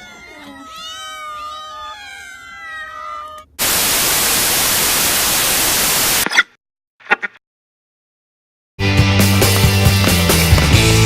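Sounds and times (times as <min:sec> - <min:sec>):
cat meowing: 0:00.0 - 0:03.6
loud hissing static: 0:03.6 - 0:06.2.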